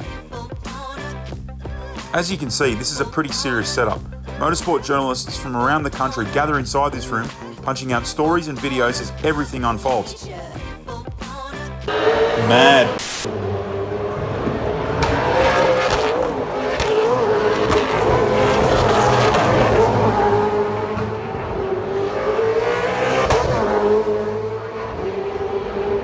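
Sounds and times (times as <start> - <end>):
race cars at high revs: 11.8 - 26.0.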